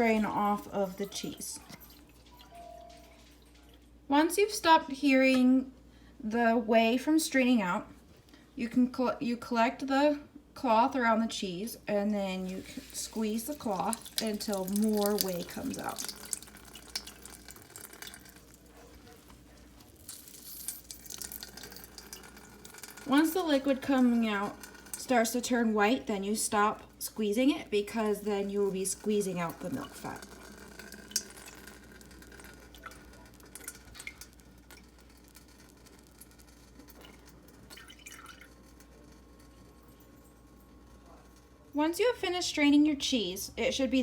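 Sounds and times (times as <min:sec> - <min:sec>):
liquid trickling and dripping: 0:12.4 - 0:25.4, 0:28.0 - 0:39.5.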